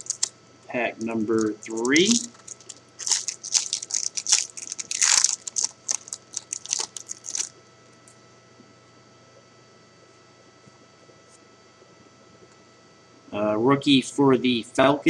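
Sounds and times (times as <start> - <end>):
foil wrapper tearing and crinkling: 0.0 - 0.3, 1.0 - 7.5
faint steady hum: 0.0 - 15.0.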